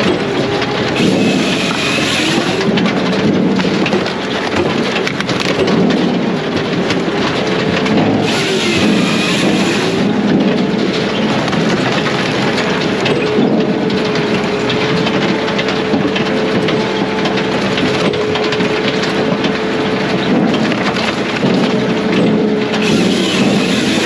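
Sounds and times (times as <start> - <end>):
constant machine whine: 0.0 - 24.0
firewood processor running: 0.0 - 24.0.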